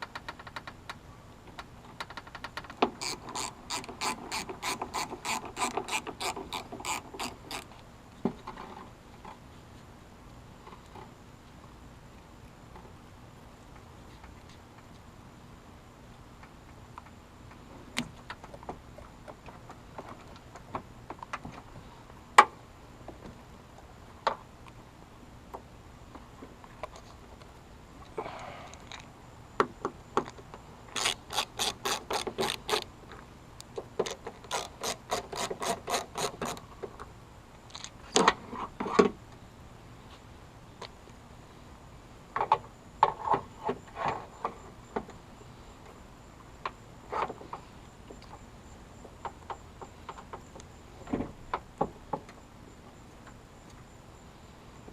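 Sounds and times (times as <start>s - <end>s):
hand tool ratcheting: 2.0s - 7.8s, 30.9s - 32.9s, 34.0s - 36.6s.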